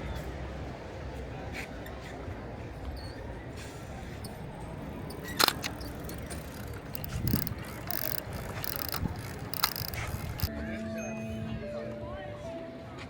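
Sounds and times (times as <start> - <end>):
outdoor background noise: 0.0 - 13.0
film winding ratchet clicks: 5.1 - 10.5.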